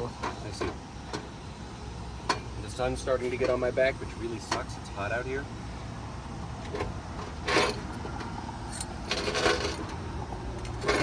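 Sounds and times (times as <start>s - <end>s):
metal cooking gear clinking: 10.6s - 11.0s.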